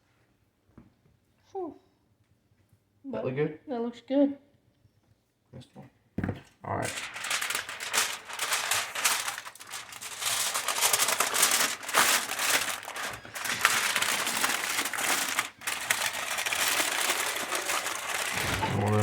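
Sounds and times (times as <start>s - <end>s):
aluminium foil crinkling: 6.7s - 19.0s.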